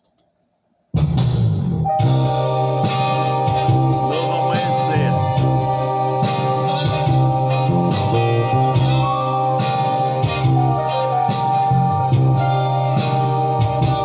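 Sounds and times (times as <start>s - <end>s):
instrumental pop band music: 4.1s - 5.5s.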